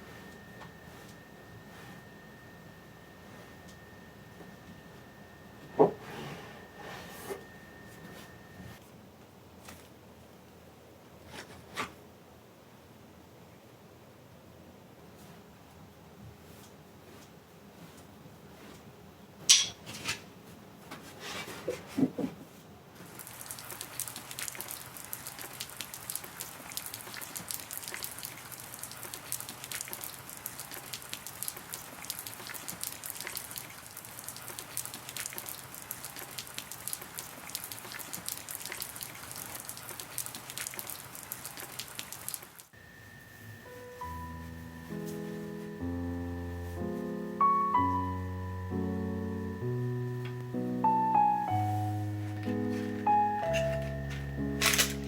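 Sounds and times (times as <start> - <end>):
rain pattering: 23.0 - 42.7.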